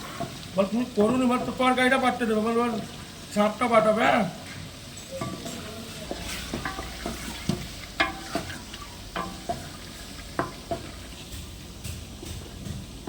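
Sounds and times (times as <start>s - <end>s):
meat sizzling in a pan: 0.0s - 13.0s
utensil scraping a pan: 4.5s - 12.8s.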